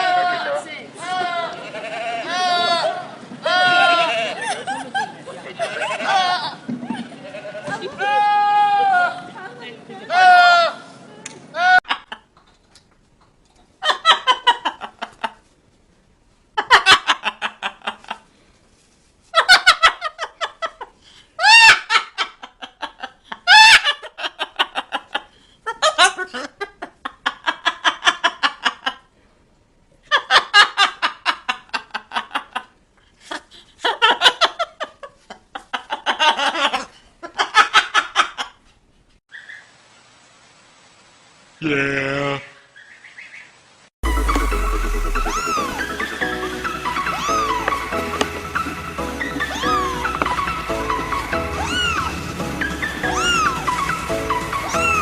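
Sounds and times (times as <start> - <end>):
person laughing: 3.6 - 8.4, 44.0 - 55.0.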